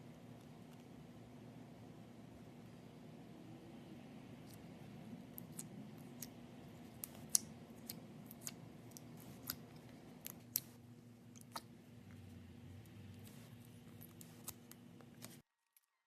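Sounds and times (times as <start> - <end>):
faint low hum: 0.0 - 16.0.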